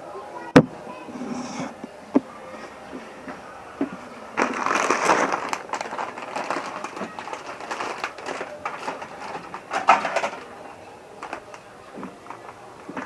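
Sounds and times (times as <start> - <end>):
crackling crunching noise: 3.8 - 13.0.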